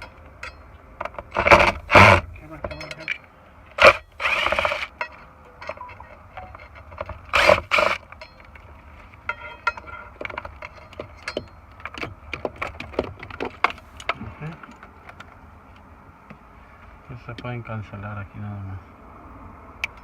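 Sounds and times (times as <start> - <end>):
rasping scrape: 3.8 - 5.2, 6.5 - 8.0
light clicks and knocks of tools: 8.0 - 16.4.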